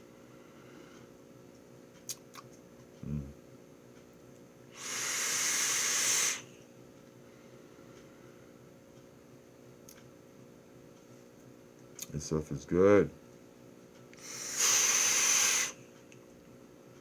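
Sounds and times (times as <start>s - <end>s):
vape vapor hiss: 4.7s - 6.5s, 14.2s - 15.8s.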